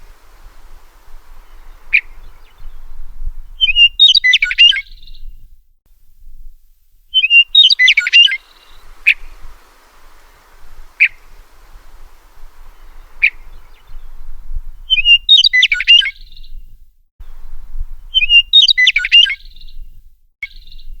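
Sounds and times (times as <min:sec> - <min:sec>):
meadowlark singing: 0:00.0 - 0:05.3, 0:07.1 - 0:16.6, 0:17.2 - 0:19.8
sharp bird call notes: 0:07.2 - 0:14.0.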